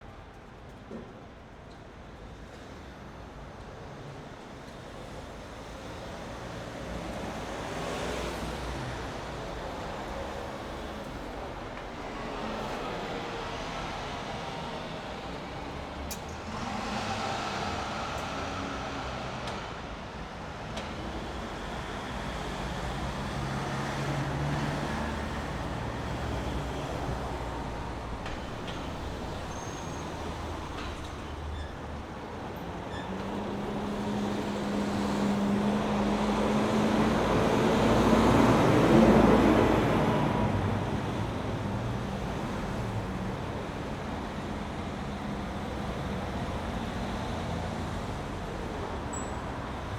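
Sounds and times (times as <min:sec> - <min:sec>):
road noise from passing cars: 0:01.5 - 0:49.9
heavy vehicle engine passing: 0:22.8 - 0:49.1.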